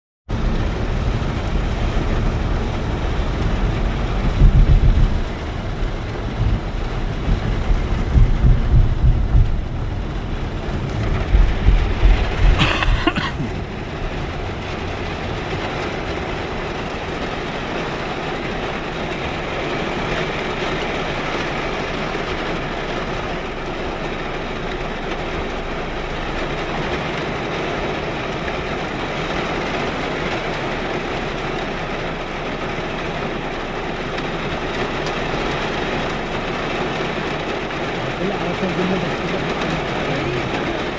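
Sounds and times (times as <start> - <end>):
deep low rumbles: 0.3 - 19.3
heavy rain: 0.3 - 40.9.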